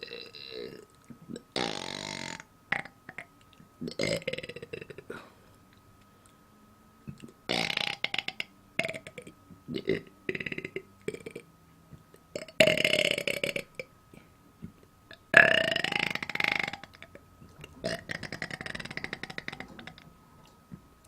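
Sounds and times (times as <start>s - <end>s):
woman belching: 0.0s - 5.3s, 7.5s - 11.4s, 12.4s - 13.9s, 15.1s - 20.0s.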